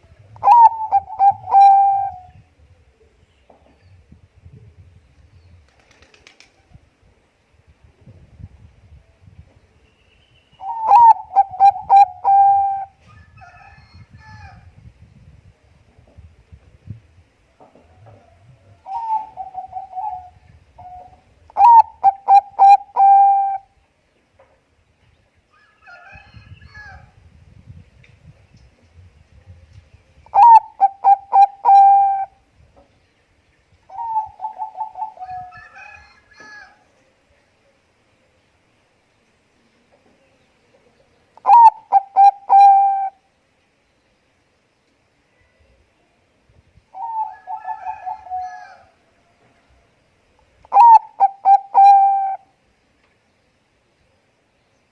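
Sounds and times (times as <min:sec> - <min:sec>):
dove cooing: 0:00.4 - 0:03.2, 0:10.6 - 0:13.0, 0:18.0 - 0:23.7, 0:30.3 - 0:32.4, 0:33.9 - 0:35.6, 0:41.4 - 0:43.2, 0:47.0 - 0:48.9, 0:50.6 - 0:52.5
faint higher bird call: 0:45.1 - 0:46.2.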